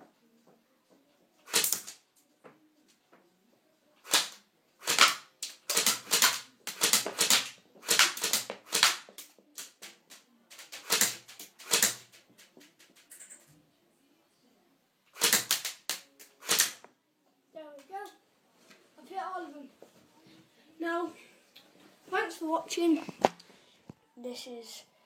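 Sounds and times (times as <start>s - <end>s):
electric bb gun firing: 1.5s - 2.0s, 4.0s - 12.2s, 15.1s - 16.8s.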